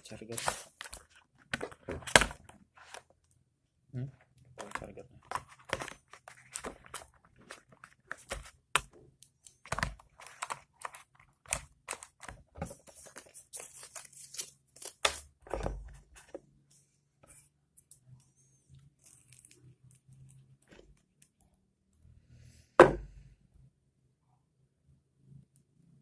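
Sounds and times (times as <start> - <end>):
plastic packaging crinkling: 4.6 - 8.8, 9.4 - 15.3.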